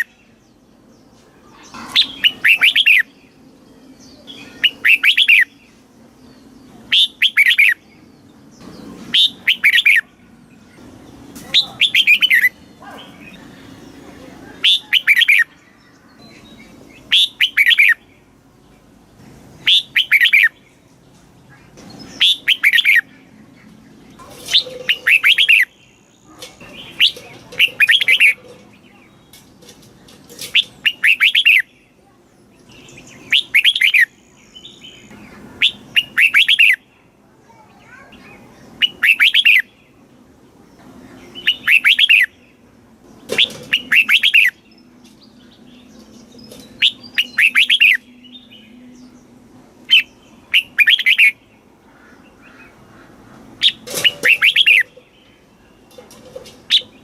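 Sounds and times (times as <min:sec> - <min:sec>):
bird singing whistled notes: 0:02.0 - 0:03.2, 0:03.8 - 0:05.6, 0:06.9 - 0:07.8, 0:09.1 - 0:10.1, 0:14.6 - 0:18.0, 0:19.6 - 0:20.6, 0:22.0 - 0:23.1, 0:30.6 - 0:31.8, 0:32.8 - 0:36.8, 0:38.8 - 0:39.8, 0:41.3 - 0:42.4, 0:43.4 - 0:49.3, 0:49.9 - 0:51.4, 0:53.6 - 0:54.9.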